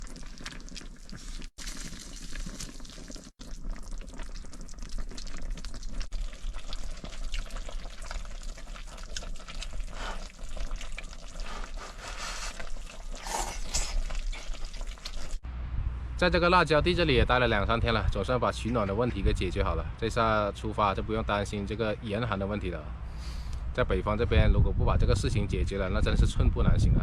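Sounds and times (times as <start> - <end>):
food sizzling and bubbling in pan: 0.0 - 15.4.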